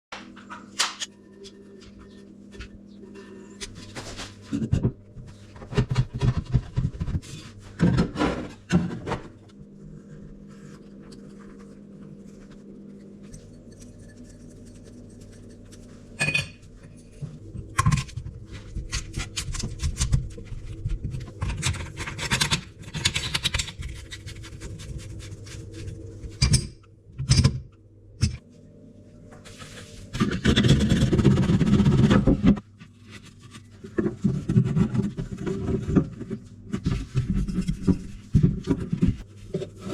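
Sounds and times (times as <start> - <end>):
plumbing tools scraping and clicking: 12.9 - 27.6.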